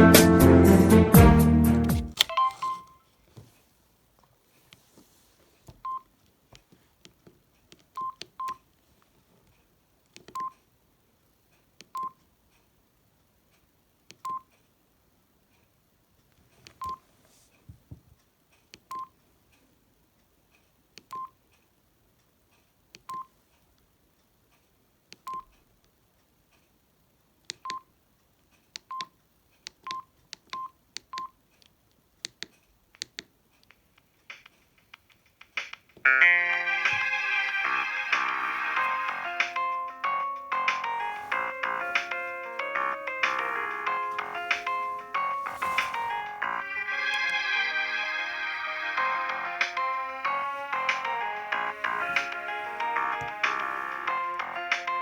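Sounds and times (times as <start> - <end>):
phone keypad beeps: 2.2 - 3.0, 21.1 - 21.3.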